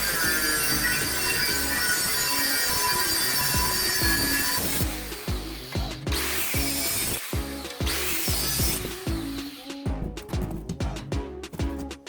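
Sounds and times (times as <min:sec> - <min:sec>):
music with punchy beat: 0:03.1 - 0:12.0.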